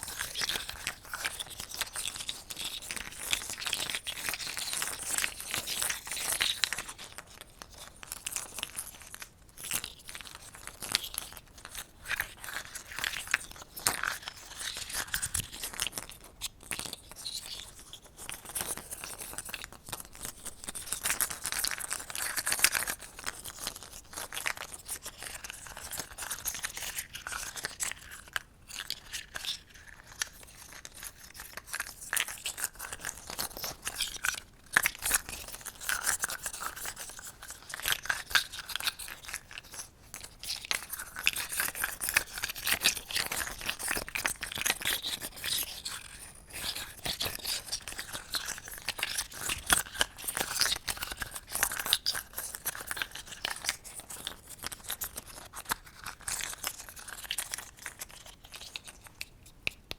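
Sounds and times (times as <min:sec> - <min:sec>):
crackling and scratching handling sounds: 0:00.0 - 0:59.9.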